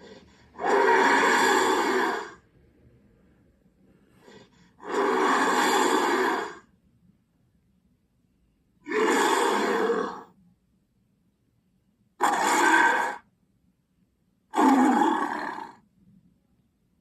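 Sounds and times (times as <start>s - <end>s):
heavy creature breaths: 0.0s - 2.4s, 4.1s - 6.6s.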